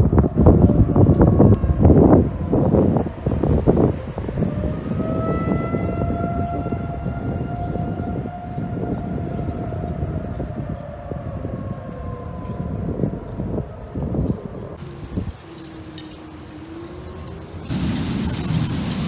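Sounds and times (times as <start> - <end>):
tornado warning siren: 0.0 - 19.0
wind buffeting microphone: 0.0 - 19.0.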